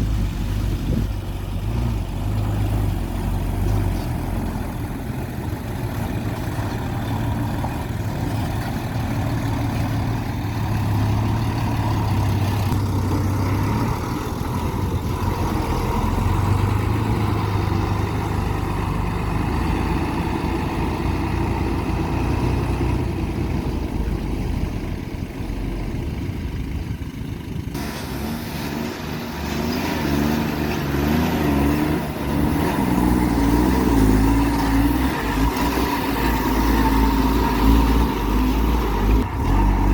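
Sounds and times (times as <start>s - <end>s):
heavy machine engine running: 0.0s - 39.9s.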